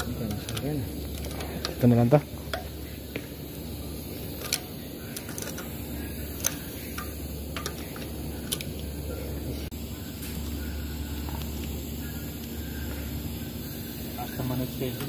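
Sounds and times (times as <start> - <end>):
hand tools clicking on metal: 0.0 - 2.8, 4.3 - 8.8
steady background hum: 0.0 - 15.0.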